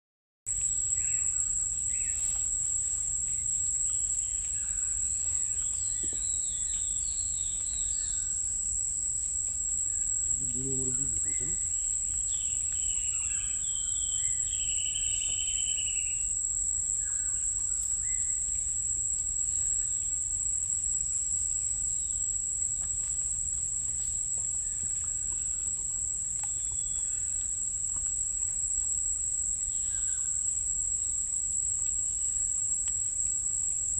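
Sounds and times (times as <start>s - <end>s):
insects droning: 0.5s - 33.9s
bird chirps: 3.9s - 8.4s, 9.9s - 16.3s, 26.4s - 27.4s.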